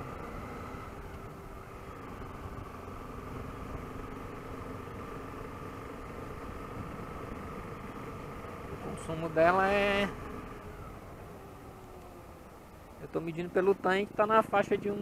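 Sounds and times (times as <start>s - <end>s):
motorcycle engine running: 0.0s - 15.0s
wind and road noise: 0.0s - 15.0s.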